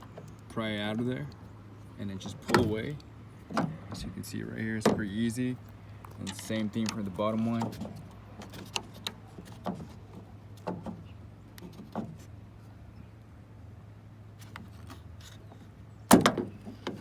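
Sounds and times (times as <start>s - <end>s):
loud metal clunk: 16.1s - 16.6s.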